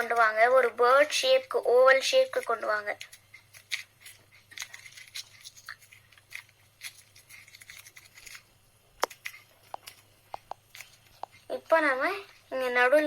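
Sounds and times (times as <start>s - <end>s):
paper being crumpled: 2.4s - 8.5s.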